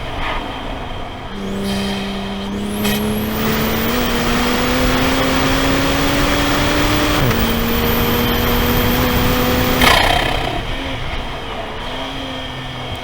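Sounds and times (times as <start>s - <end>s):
car engine accelerating: 0.9s - 12.2s
sharp exhaust burst: 1.3s - 10.8s.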